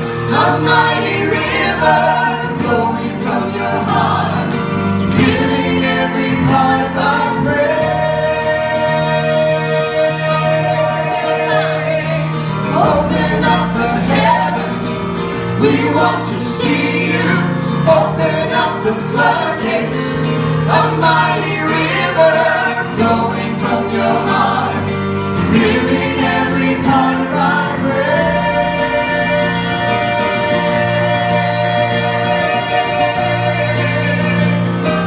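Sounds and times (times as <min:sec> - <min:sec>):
keyboard and bass chords: 0:00.0 - 0:35.0
voices singing worship song: 0:00.0 - 0:35.0.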